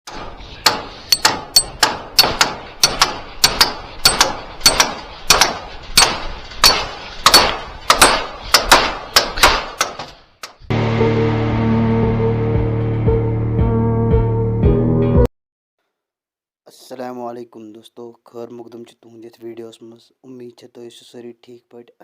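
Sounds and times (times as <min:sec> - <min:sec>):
hammer striking metal: 0:00.1 - 0:11.7
music: 0:10.7 - 0:15.3.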